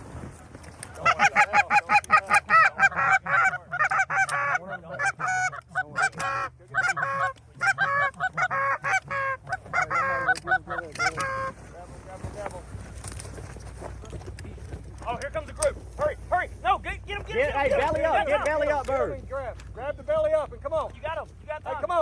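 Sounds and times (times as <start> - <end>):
goose honking: 0.9 - 11.8.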